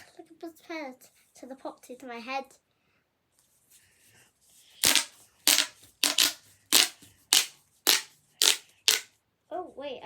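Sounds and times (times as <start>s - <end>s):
plastic pop tube snapping: 4.8s - 9.1s.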